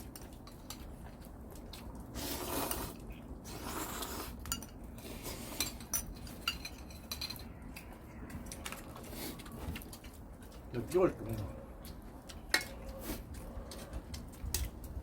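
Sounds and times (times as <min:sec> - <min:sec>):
metal utensils clinking on dishes: 0:04.4 - 0:07.9.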